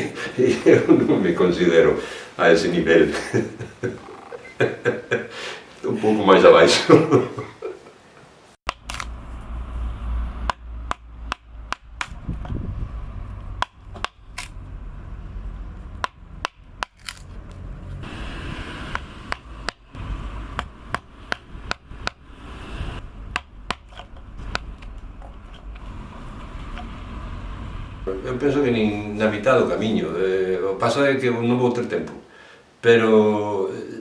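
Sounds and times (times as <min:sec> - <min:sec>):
low steady rumble: 0:08.8 - 0:31.0.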